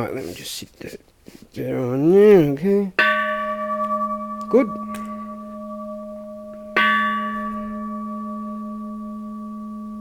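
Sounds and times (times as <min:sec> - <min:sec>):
low steady hum: 0:02.9 - 0:10.0
temple bell ringing: 0:03.0 - 0:10.0.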